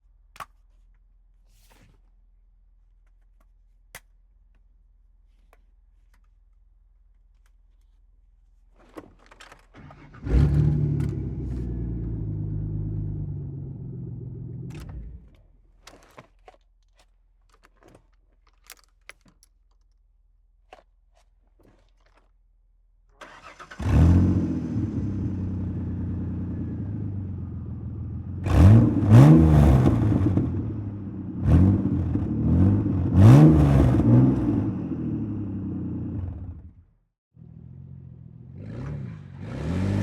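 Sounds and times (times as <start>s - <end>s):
car engine starting and idling: 9.4s - 15.4s, 23.2s - 36.8s.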